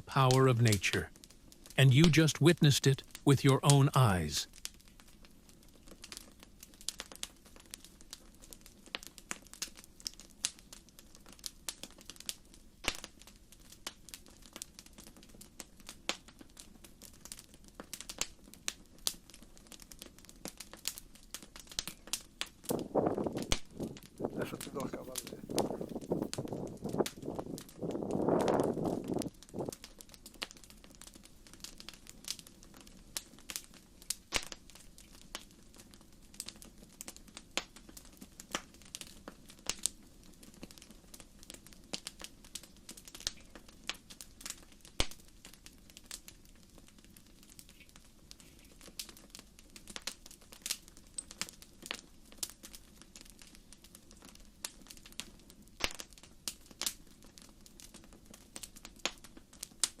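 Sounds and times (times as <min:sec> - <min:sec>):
lava crust snapping and clinking: 0:49.8 - 0:52.9.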